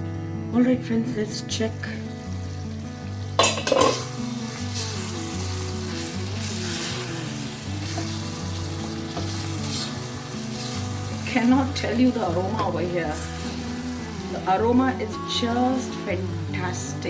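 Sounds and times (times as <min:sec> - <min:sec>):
curry sizzling in a wok: 0:01.2 - 0:17.0
metal clatter: 0:03.4 - 0:04.1.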